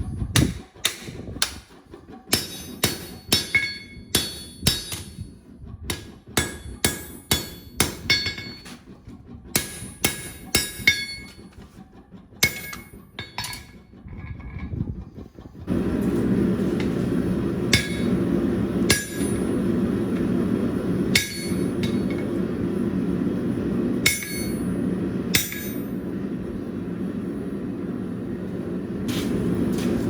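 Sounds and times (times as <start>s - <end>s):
hammer blows on steel anvil: 0.4s - 5.3s, 5.9s - 8.8s, 9.6s - 11.4s, 16.8s - 20.3s, 21.1s - 22.3s, 24.0s - 26.0s.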